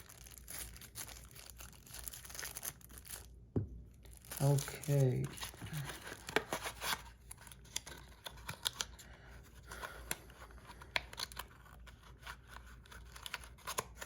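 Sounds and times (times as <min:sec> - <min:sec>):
packaging handling noise: 0:00.0 - 0:14.0.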